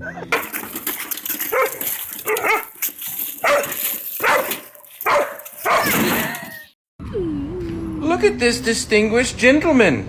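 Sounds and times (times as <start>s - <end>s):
dog barking: 1.5s - 2.7s, 3.4s - 6.0s.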